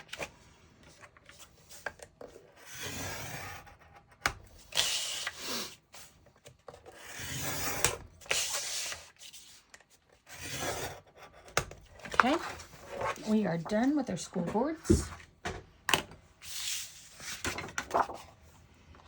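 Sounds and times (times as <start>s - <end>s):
scoring tool scraping cardstock: 6.7s - 14.8s.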